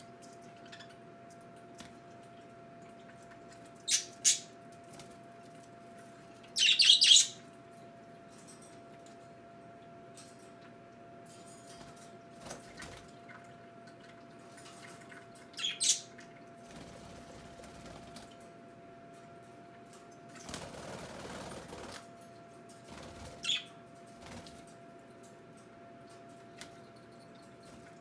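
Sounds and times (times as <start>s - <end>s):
water fountain pump hum: 0.0s - 28.0s
wings flapping: 20.3s - 22.1s, 22.8s - 23.6s.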